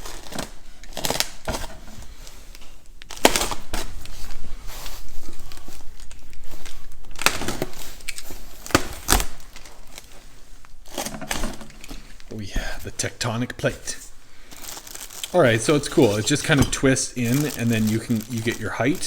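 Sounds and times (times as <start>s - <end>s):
plastic wrap crinkling: 0.0s - 19.0s
styrofoam and cardboard rubbing: 7.2s - 19.0s.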